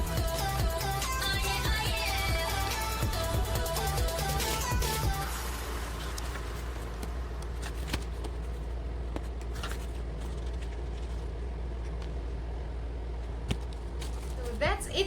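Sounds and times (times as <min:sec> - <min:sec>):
steady low hum: 0:00.0 - 0:15.0
soft rustles: 0:05.8 - 0:15.0.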